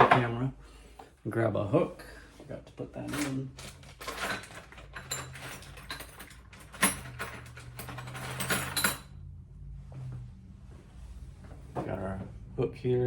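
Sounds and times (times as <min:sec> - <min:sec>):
small hardware clicking and rattling: 0:03.0 - 0:09.1.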